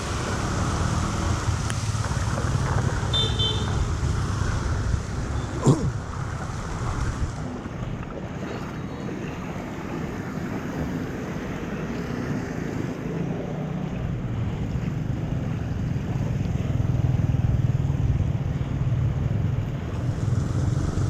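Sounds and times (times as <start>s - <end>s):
floodwater rushing into drain: 3.9s - 11.2s, 19.8s - 21.0s.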